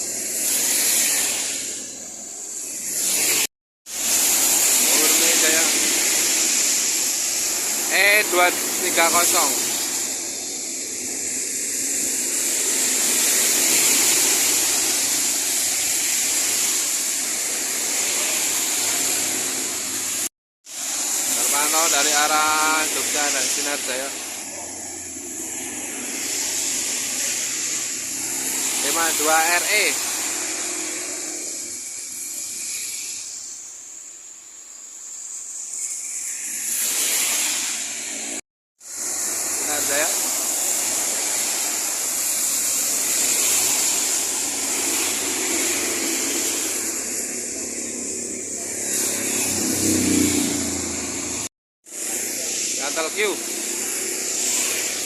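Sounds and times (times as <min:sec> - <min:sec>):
tyres hissing on wet road: 0:00.0 - 0:55.0
vehicle passing: 0:48.5 - 0:51.5.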